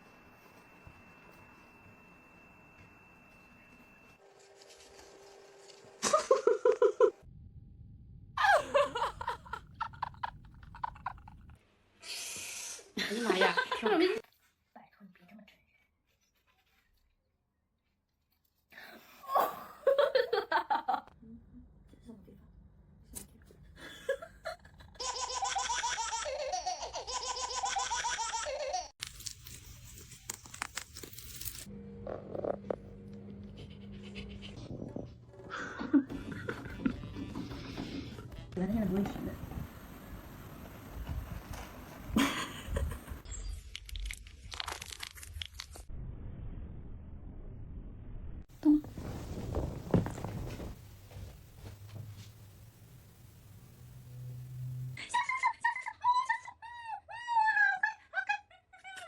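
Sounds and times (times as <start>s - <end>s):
person laughing: 6.0s - 7.2s, 8.4s - 11.6s, 35.4s - 37.6s, 42.1s - 43.2s
person falling cry: 8.4s - 8.8s.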